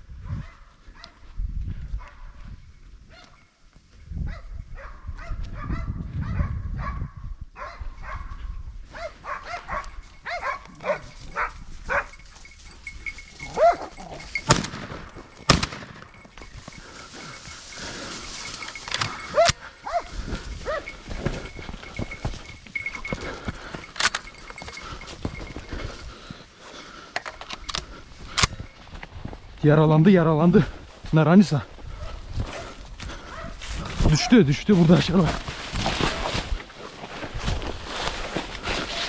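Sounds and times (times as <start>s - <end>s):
dogs barking and baying: 0.2s - 1.3s, 4.2s - 28.7s, 31.8s - 39.0s
loud gunshots: 15.5s - 16.0s.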